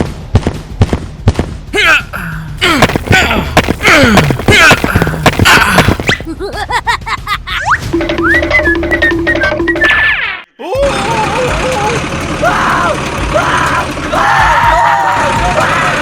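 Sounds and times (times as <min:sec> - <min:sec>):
sharp thuds: 0:00.0 - 0:01.7, 0:02.6 - 0:06.3
gliding whistle-like sound effects: 0:07.8 - 0:10.0.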